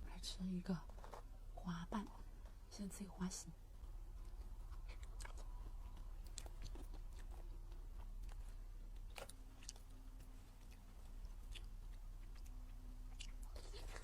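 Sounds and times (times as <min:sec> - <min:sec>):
small crisp crackles: 0:00.0 - 0:14.0
steady low hum: 0:00.0 - 0:14.0
chewing and biting dessert: 0:03.8 - 0:14.0.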